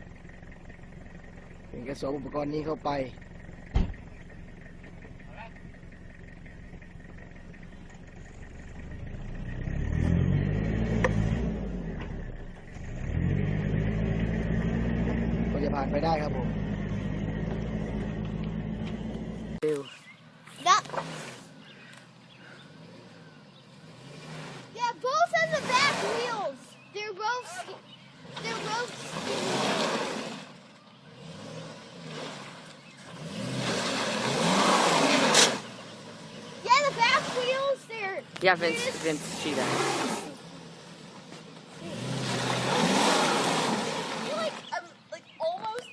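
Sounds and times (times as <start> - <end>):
car engine revving hard: 8.7 - 19.6, 20.8 - 44.8
wheels spinning in mud: 22.6 - 44.8.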